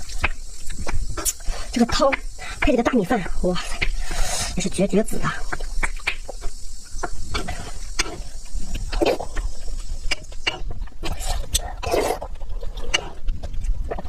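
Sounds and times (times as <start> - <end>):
wet chewing and slurping: 0.0 - 14.0
sharp mouth clicks: 0.1 - 2.7, 5.5 - 12.1.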